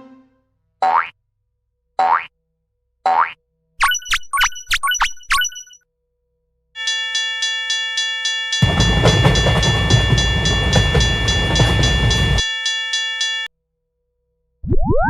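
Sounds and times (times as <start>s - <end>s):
railroad crossing bell ringing: 6.8s - 13.5s
train passing: 8.6s - 13.5s.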